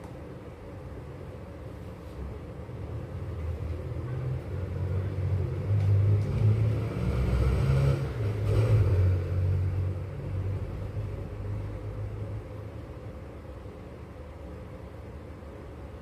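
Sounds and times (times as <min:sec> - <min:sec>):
passing motor vehicle rumble: 0:03.4 - 0:12.7.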